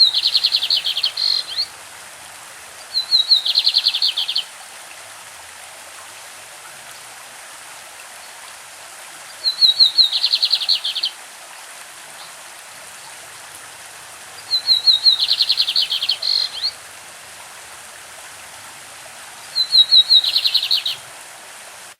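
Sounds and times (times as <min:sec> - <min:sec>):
bird song with rattling trill: 0:00.0 - 0:01.6, 0:14.4 - 0:16.7, 0:19.5 - 0:21.0
stream running: 0:00.0 - 0:21.9.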